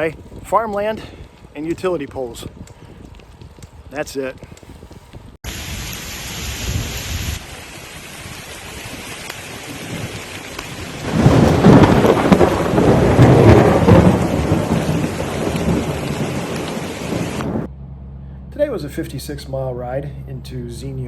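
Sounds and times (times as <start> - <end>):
heavy rain: 5.5 - 17.7
rolling thunder: 9.7 - 17.7.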